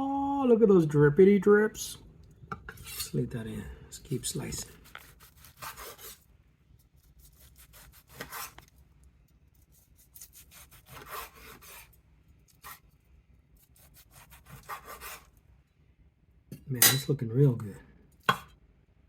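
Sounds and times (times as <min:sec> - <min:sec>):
knife sawing through meat: 0:04.8 - 0:06.2, 0:07.2 - 0:08.6, 0:09.8 - 0:12.0, 0:13.6 - 0:15.3.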